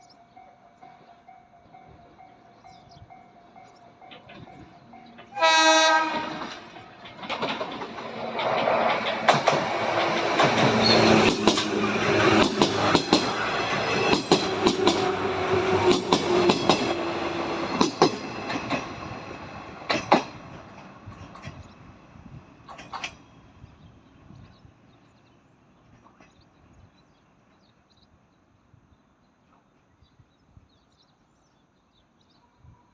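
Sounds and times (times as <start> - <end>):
train horn blast: 5.2 - 6.7
train wheels clacking over joints: 6.0 - 21.8.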